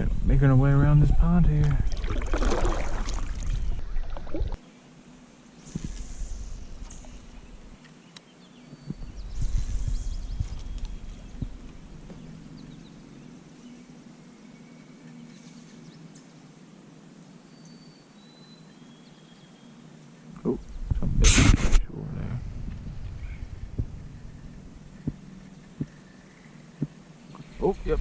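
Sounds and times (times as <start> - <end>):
low steady hum: 0.0 - 28.0
faint bird calls: 22.9 - 28.0.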